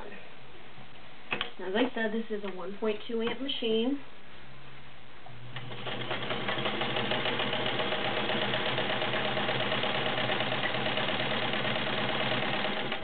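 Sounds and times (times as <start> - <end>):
sewing machine running: 5.6 - 13.0.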